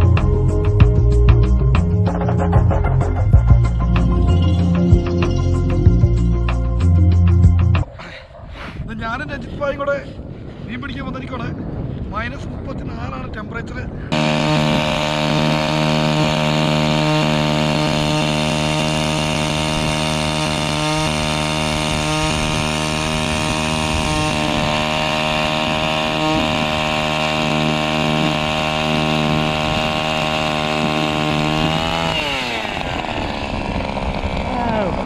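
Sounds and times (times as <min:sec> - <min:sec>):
ice auger engine drilling: 0:14.1 - 0:35.0.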